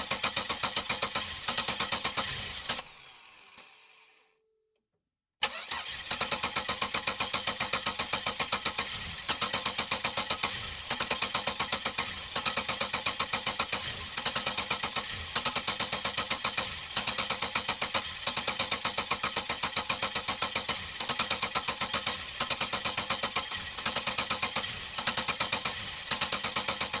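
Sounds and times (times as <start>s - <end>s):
car engine cranking: 5.4s - 14.4s.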